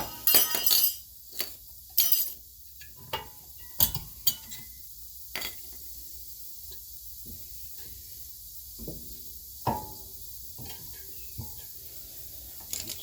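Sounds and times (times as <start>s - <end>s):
metal brake clips clinking: 0.0s - 2.4s.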